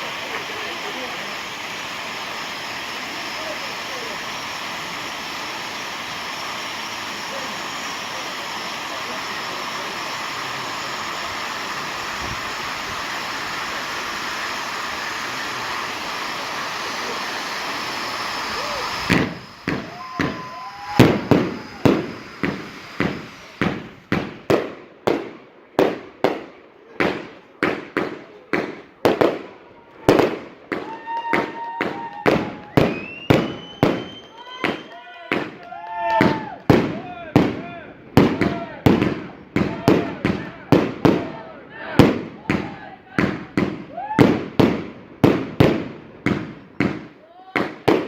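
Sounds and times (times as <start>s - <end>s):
pyrotechnics hissing: 0.0s - 24.8s
firework bangs: 0.0s - 48.0s
firework whistling tones: 0.0s - 48.0s.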